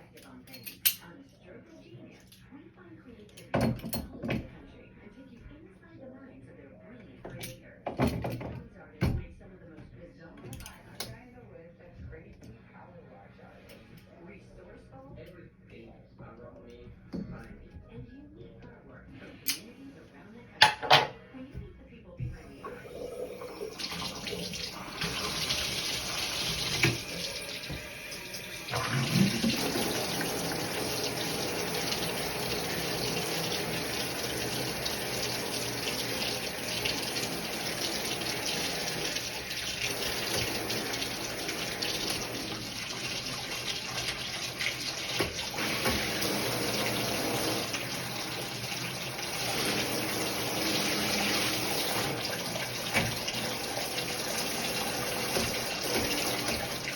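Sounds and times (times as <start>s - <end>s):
shower water running: 22.4s - 56.9s.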